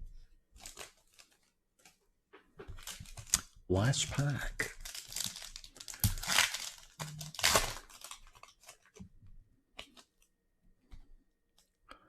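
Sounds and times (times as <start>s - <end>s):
wrapper tearing and crinkling: 0.6s - 1.9s, 2.8s - 3.6s, 4.2s - 9.0s.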